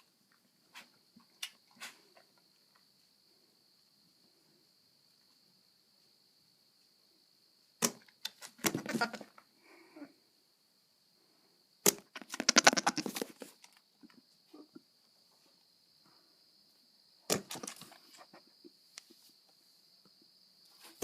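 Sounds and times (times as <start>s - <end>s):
goat rattling sputtering noise: 12.2s - 13.3s
goat grunting: 12.4s - 13.1s.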